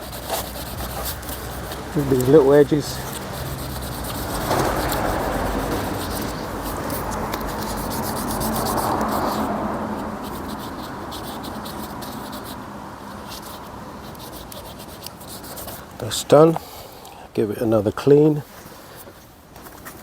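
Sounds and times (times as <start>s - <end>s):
sandpaper scratching plastic: 0.0s - 16.2s.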